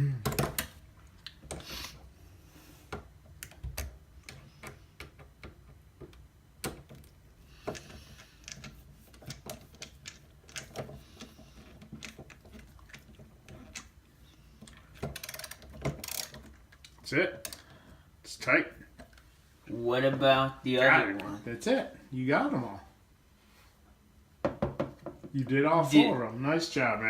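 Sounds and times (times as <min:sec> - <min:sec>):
ratcheting screwdriver clicking: 0:15.2 - 0:16.4.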